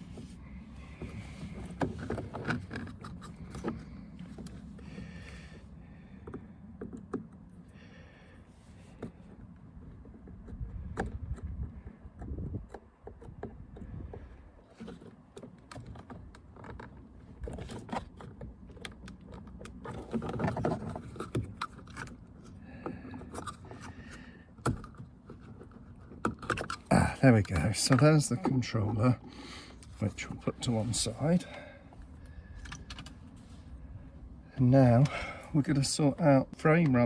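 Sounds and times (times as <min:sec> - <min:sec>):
hard plastic clicking and scraping: 0:00.9 - 0:04.8, 0:08.9 - 0:31.6.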